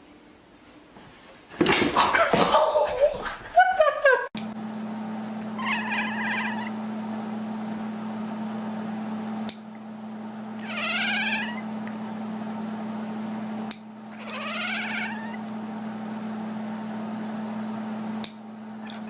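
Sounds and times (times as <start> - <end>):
cat meowing: 5.6 - 6.7, 10.6 - 11.6, 14.1 - 15.4.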